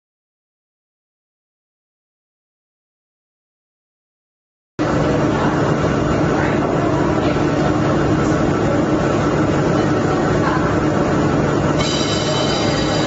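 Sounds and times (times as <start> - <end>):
mechanical drone with low hum: 4.8 - 13.0.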